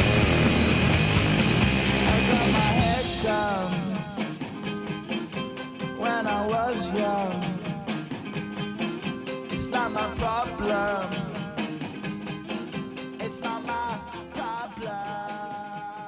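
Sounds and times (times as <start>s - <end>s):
rock music with guitar: 0.0s - 16.0s
person singing: 1.9s - 4.7s, 5.8s - 8.1s, 9.4s - 11.9s, 13.1s - 16.0s.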